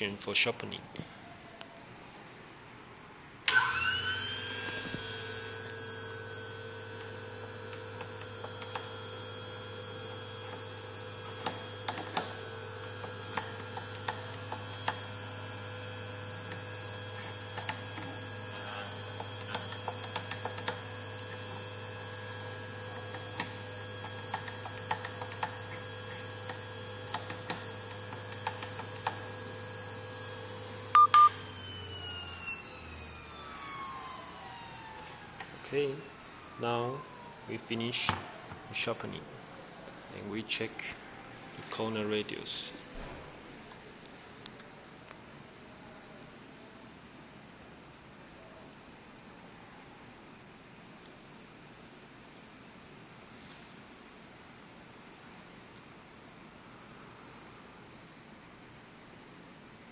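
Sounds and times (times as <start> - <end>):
grinder motor whining: 3.5 - 41.1.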